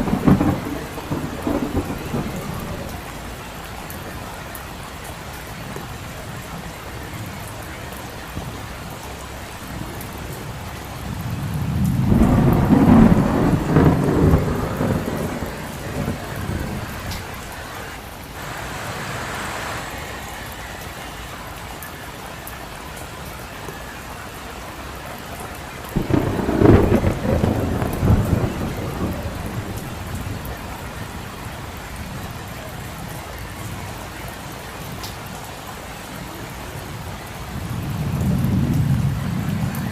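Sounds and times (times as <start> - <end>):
low rolls of thunder: 0.0 - 17.8, 25.0 - 33.0, 36.9 - 39.9
steady rain falling: 0.0 - 39.9.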